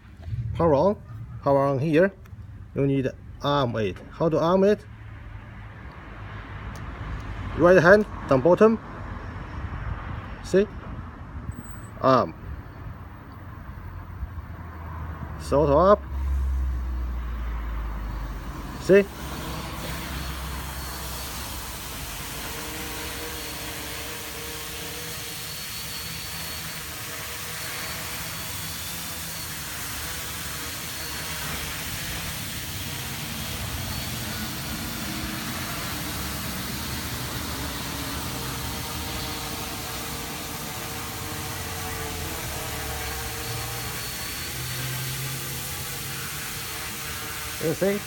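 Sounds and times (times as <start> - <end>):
drone propellers whirring: 0.0 - 2.8, 16.1 - 48.0.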